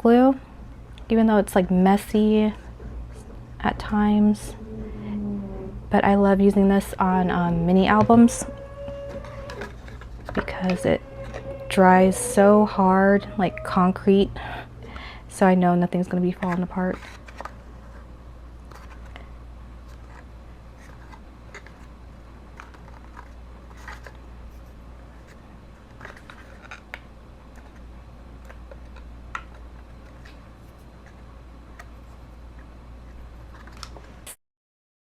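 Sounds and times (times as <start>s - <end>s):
steady low hum: 0.0s - 34.2s.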